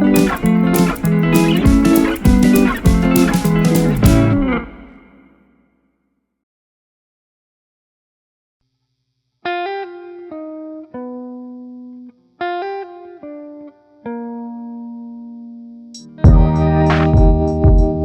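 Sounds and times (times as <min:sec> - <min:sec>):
plucked guitar melody: 0:00.0 - 0:05.2, 0:09.6 - 0:18.0.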